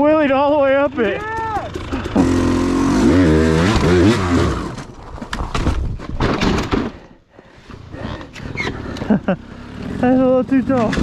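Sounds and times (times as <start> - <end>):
dirt bike engine revving: 0.7 - 4.9, 8.0 - 11.0
sharp knocks and cracks: 4.8 - 7.0.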